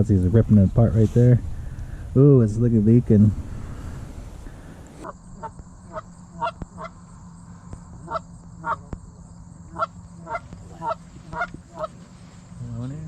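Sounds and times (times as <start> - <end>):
goose honking: 3.6 - 7.1, 8.0 - 9.0, 9.6 - 12.4.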